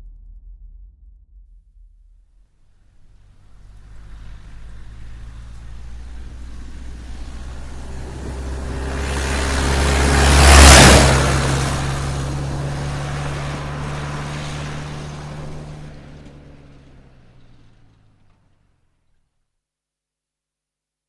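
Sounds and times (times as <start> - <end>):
bus passing by: 2.8 - 18.8.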